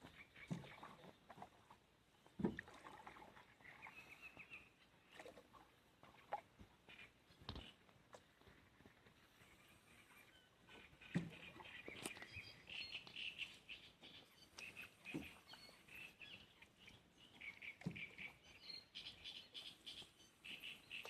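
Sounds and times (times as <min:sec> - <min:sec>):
small birds chirping: 0:09.4 - 0:21.0.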